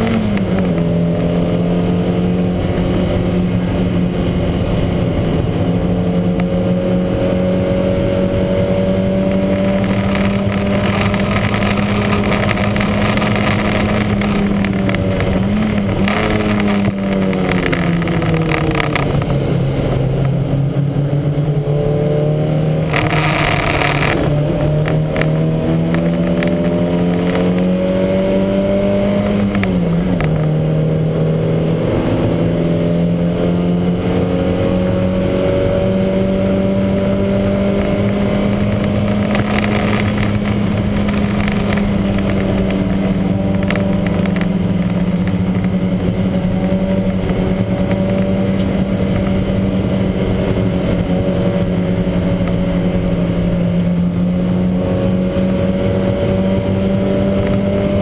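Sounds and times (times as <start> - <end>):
race car engine: 0.0 - 58.0.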